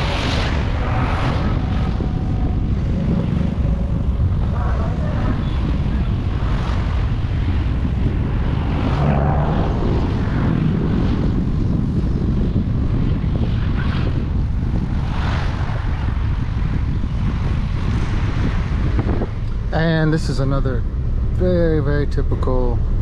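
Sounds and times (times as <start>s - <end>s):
car engine and tyre rumble: 0.0s - 23.0s
wind on microphone: 0.0s - 23.0s.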